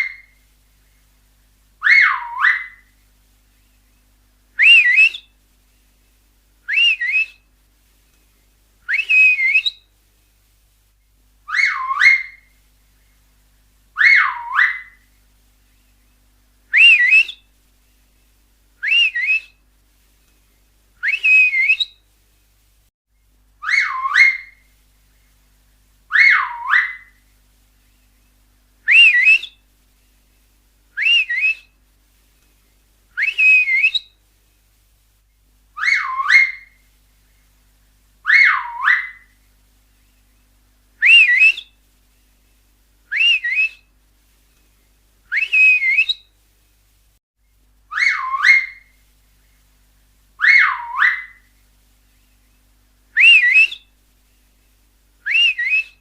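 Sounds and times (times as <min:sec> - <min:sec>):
shrill finger whistles: 0:04.6 - 0:05.3, 0:06.7 - 0:07.4, 0:08.9 - 0:09.8, 0:16.8 - 0:17.4, 0:18.8 - 0:19.6, 0:21.0 - 0:22.0, 0:28.9 - 0:29.6, 0:31.0 - 0:31.7, 0:33.2 - 0:34.1, 0:35.8 - 0:36.8, 0:41.0 - 0:41.8, 0:43.1 - 0:43.9, 0:45.3 - 0:46.3, 0:47.9 - 0:49.0, 0:53.2 - 0:53.9, 0:55.2 - 0:56.0.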